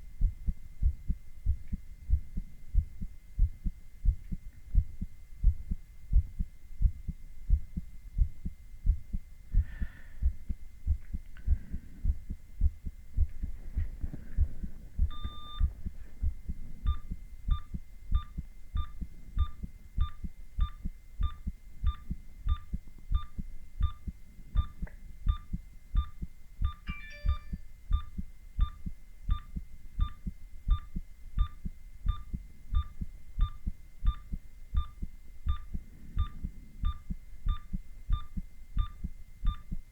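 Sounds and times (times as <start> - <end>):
faint steady hum: 0.0 - 39.9
heartbeat through stethoscope: 0.0 - 39.9
ecg monitor beeps: 15.1 - 15.7, 16.9 - 24.0, 25.3 - 39.7.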